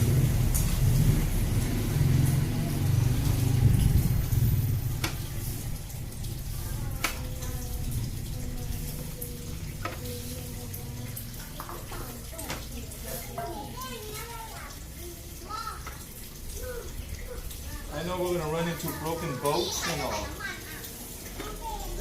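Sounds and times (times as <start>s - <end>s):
low rumble: 2.6s - 6.4s.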